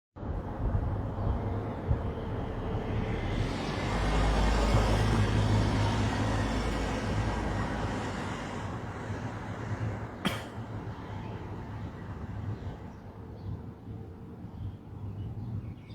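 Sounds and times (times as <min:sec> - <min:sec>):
vehicle passing on road: 0:00.2 - 0:12.9.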